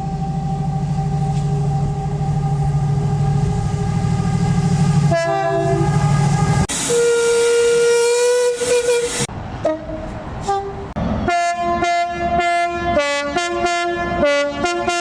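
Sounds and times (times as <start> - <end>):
diesel locomotive engine throbbing: 0.0 - 15.0
train horn: 1.3 - 15.0.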